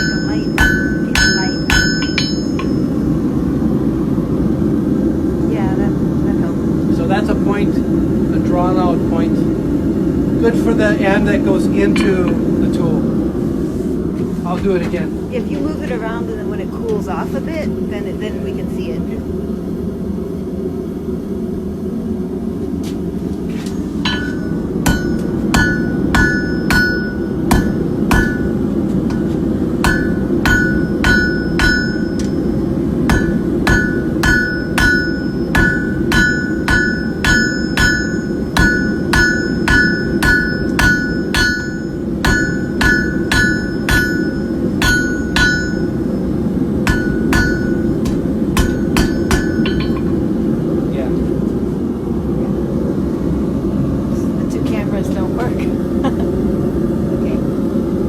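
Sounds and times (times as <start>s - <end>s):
hammer striking steel on anvil: 0.0s - 3.1s, 24.0s - 32.5s, 33.1s - 46.1s, 46.8s - 50.3s.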